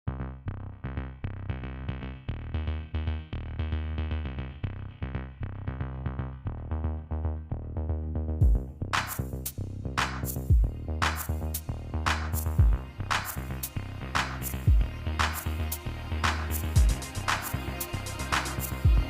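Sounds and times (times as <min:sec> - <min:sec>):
upbeat electronic music: 0:06.9 - 0:19.0.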